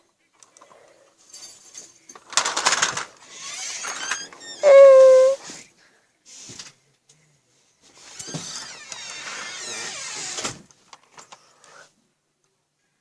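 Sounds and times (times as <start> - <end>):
toy motor whirring: 3.2 - 5.4.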